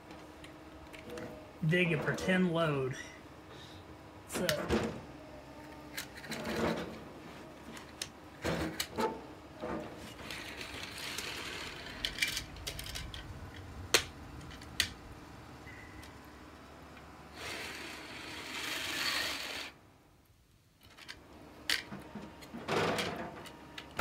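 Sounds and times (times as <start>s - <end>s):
plastic scraping: 5.7s - 15.0s.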